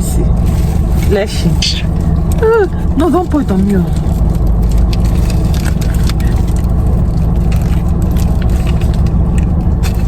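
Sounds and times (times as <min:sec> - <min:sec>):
car rumble inside cabin: 0:00.0 - 0:10.0
small crackles and clicks: 0:02.2 - 0:10.0.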